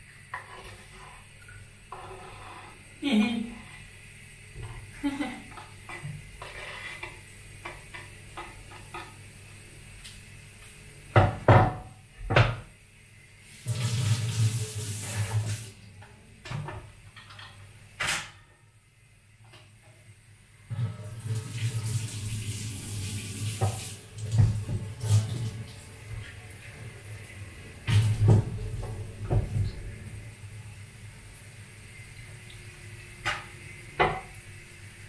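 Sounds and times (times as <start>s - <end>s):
tap water running into sink: 13.6s - 15.8s, 20.7s - 30.2s, 31.9s - 34.5s.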